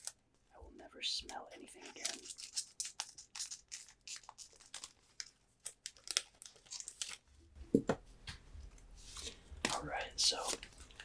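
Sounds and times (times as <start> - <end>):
foil wrapper crinkling: 1.8 - 7.3.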